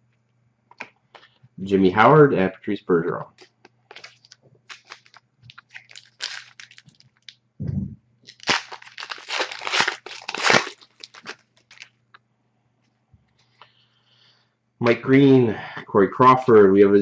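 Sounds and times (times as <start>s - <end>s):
card pack wrapper crinkling: 3.4s - 7.4s, 8.3s - 12.0s.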